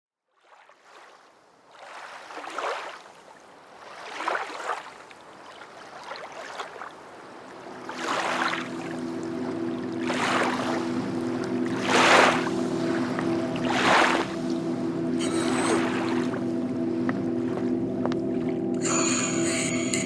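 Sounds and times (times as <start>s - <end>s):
music: 7.5s - 20.0s.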